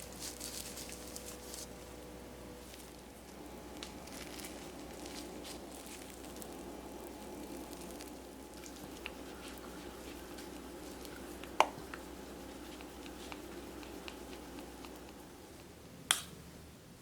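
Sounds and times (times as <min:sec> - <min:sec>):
steady low hum: 0:00.0 - 0:17.0
scraper scraping chocolate on marble: 0:04.1 - 0:15.2.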